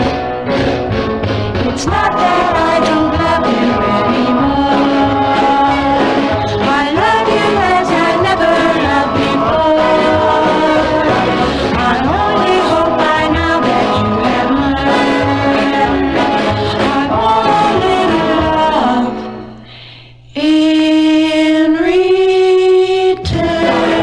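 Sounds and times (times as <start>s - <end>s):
steady bass beat: 0.0s - 18.9s
vocal group singing in harmony: 1.5s - 19.8s, 20.4s - 24.0s.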